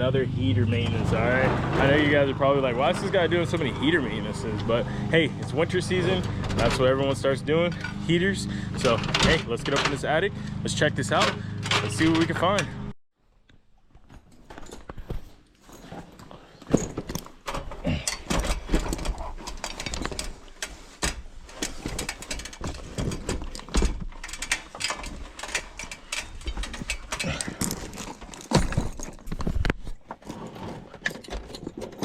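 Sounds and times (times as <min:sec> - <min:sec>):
person climbing with thumps: 0:13.4 - 0:32.0
handling noise: 0:13.6 - 0:32.0.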